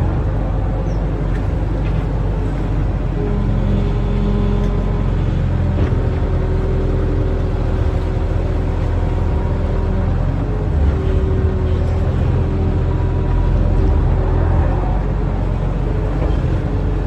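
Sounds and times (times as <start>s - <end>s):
diesel engine droning: 0.0s - 17.0s.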